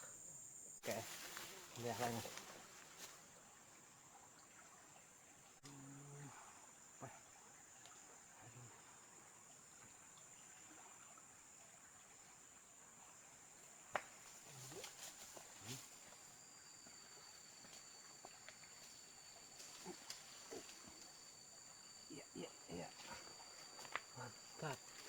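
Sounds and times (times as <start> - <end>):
lower insect tone: 0.0 - 25.0
high-pitched insect drone: 14.4 - 25.0.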